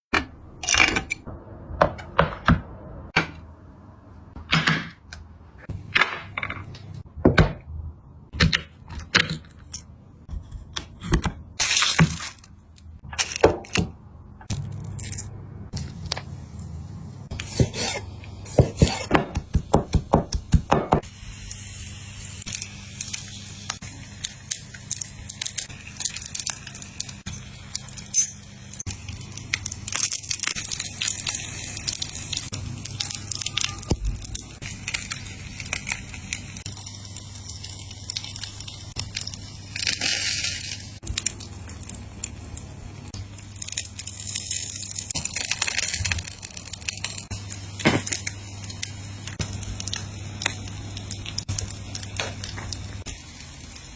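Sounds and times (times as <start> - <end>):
food cracking and crunching: 22.4 - 28.1, 28.7 - 53.9.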